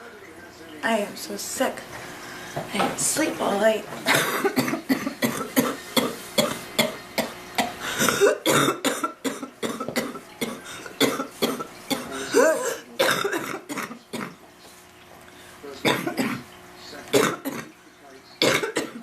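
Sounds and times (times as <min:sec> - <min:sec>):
woman coughing: 0:04.1 - 0:06.6, 0:07.6 - 0:14.3.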